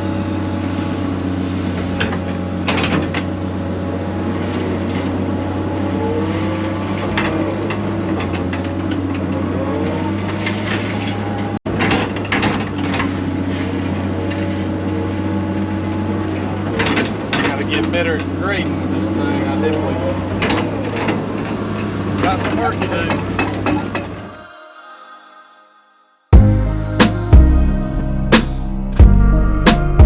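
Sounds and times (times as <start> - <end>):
hydraulic whine: 20.8 - 29.8.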